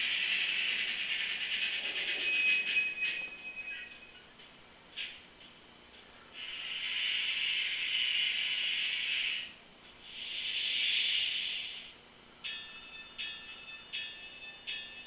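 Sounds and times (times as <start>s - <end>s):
steam hiss from small speaker: 6.4s - 12.0s.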